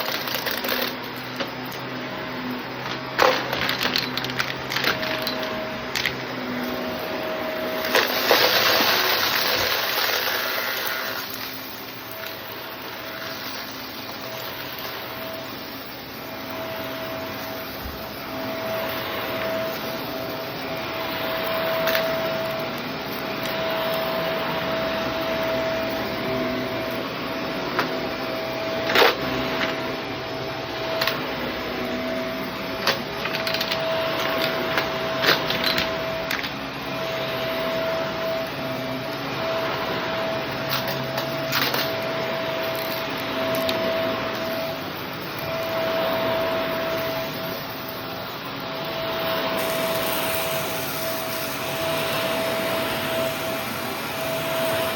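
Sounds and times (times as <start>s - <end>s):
debris clicking in vacuum: 0.0s - 1.9s, 2.7s - 6.8s, 7.7s - 15.2s, 32.7s - 36.6s
vacuum cleaner whining: 0.0s - 54.9s.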